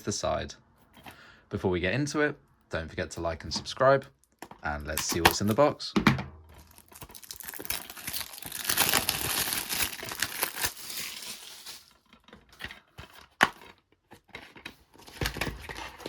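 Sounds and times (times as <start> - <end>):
plastic wrap crinkling and tearing: 6.6 - 12.2.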